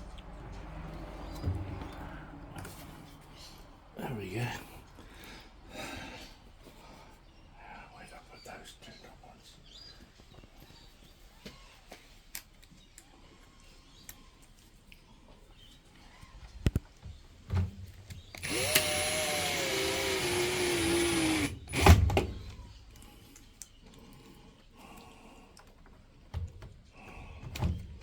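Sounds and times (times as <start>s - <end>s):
power drill driving a screw: 18.4s - 22.2s.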